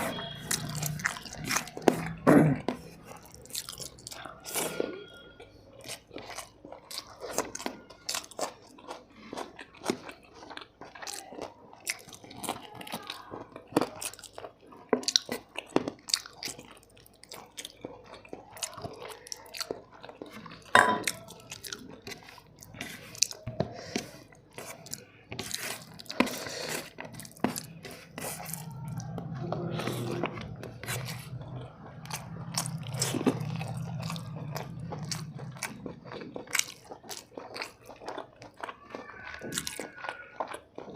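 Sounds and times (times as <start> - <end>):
wet chewing and crunching: 0.0 - 40.9
low steady hum: 27.5 - 36.6.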